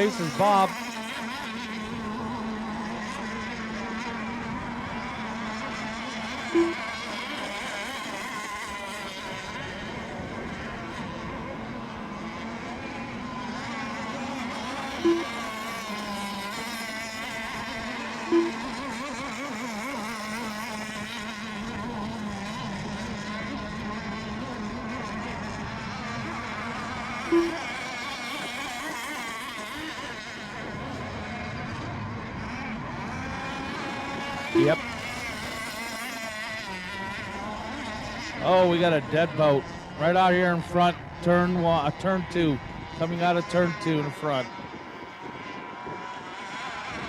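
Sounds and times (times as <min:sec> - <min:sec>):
model boat engines whining: 0:00.0 - 0:47.0
brief beep: 0:06.6 - 0:06.9, 0:15.0 - 0:15.4, 0:18.3 - 0:18.7, 0:27.3 - 0:27.7, 0:34.6 - 0:34.8.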